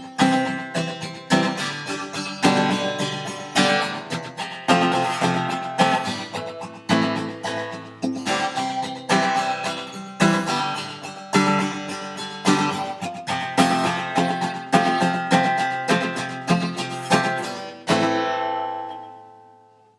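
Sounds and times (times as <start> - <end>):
acoustic guitar strumming: 0.0 - 19.9.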